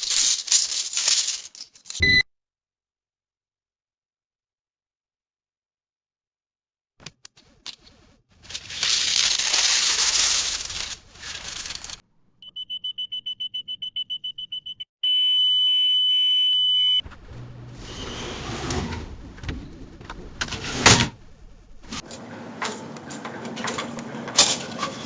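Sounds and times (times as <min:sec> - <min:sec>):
long high electronic beep: 0:02.0 - 0:02.2, 0:12.4 - 0:17.0
rapid high electronic beeps: 0:02.0 - 0:02.2.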